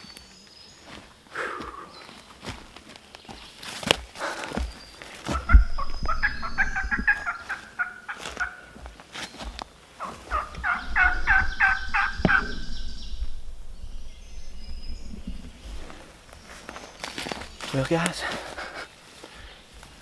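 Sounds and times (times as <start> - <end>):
turkey yelping: 5.4 - 8.8, 10.0 - 13.1.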